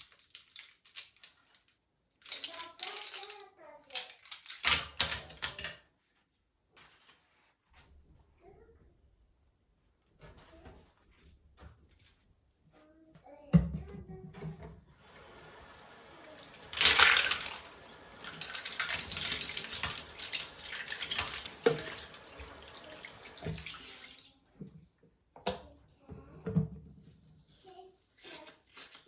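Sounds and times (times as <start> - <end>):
water running from tap into sink: 15.0 - 24.4.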